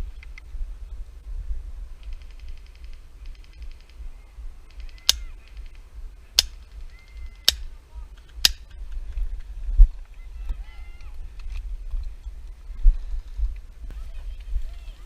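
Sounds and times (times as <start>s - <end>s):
rapid ticking bursts: 2.0s - 9.0s.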